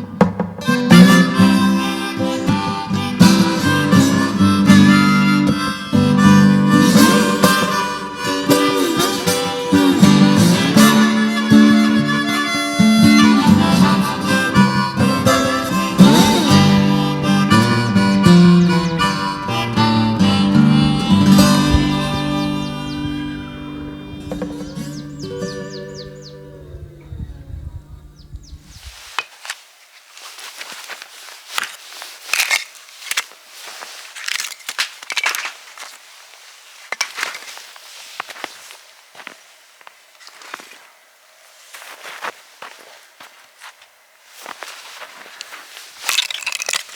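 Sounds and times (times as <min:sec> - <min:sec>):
acoustic guitar: 0:00.0 - 0:26.7
harmonica: 0:00.6 - 0:26.5
footsteps crunching: 0:28.7 - 0:46.9
rustling: 0:28.7 - 0:46.9.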